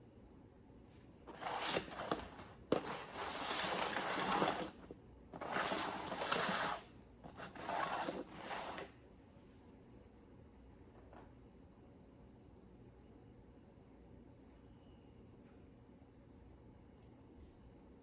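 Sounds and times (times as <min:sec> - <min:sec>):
dog pushing cups on floor: 0:01.3 - 0:08.9.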